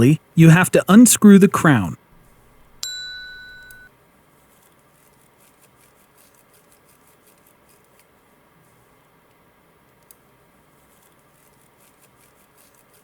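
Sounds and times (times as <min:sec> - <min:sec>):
bright metallic ding: 0:02.8 - 0:03.9
faint light ticks: 0:09.9 - 0:10.2.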